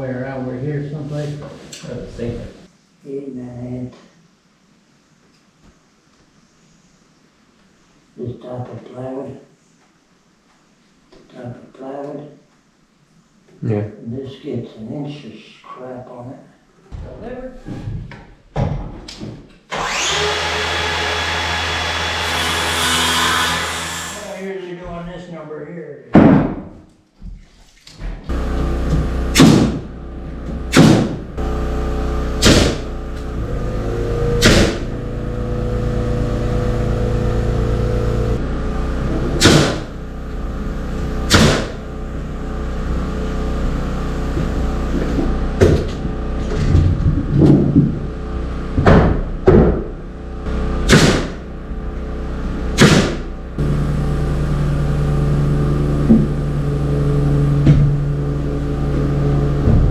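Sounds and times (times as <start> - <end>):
steady machine hum: 28.3 - 59.9
sharp knocks: 29.4 - 29.8, 30.7 - 31.2, 32.4 - 32.9, 34.4 - 34.9, 39.4 - 39.9, 41.3 - 41.8, 48.8 - 49.9, 50.9 - 51.4, 52.8 - 53.2.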